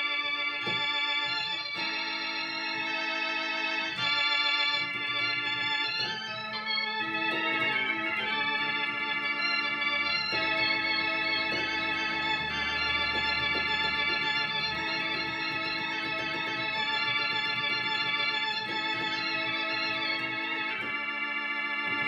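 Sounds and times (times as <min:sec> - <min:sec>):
combo organ playing chords: 0:00.0 - 0:22.0
bass line: 0:04.9 - 0:21.1.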